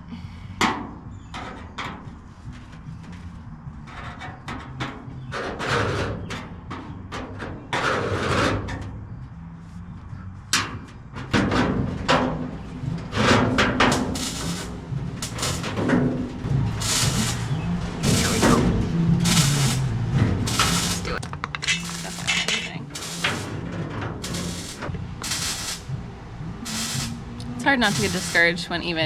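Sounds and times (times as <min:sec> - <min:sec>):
metallic crunches: 0:01.3 - 0:09.2, 0:10.5 - 0:28.8
hand shears cutting steel: 0:13.1 - 0:15.8, 0:16.7 - 0:23.6, 0:24.2 - 0:25.8, 0:26.6 - 0:28.7.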